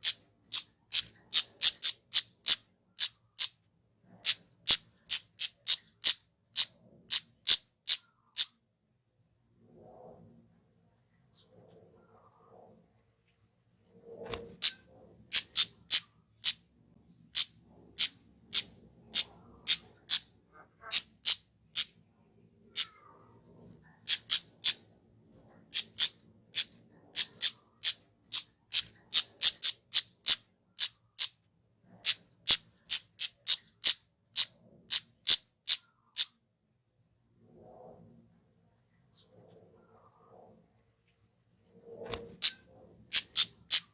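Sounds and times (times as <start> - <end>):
bird calling high tsit notes: 15.4 - 16.6, 24.1 - 24.8, 43.2 - 43.9.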